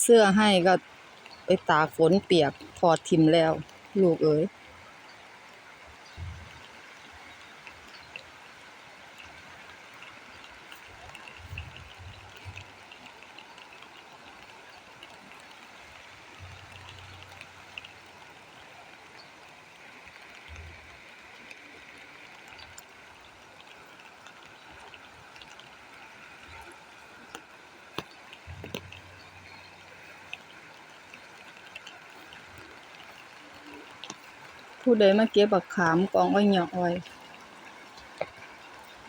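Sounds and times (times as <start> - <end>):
running rainwater rushing: 0.0 - 39.0
low rumbles: 28.4 - 31.6.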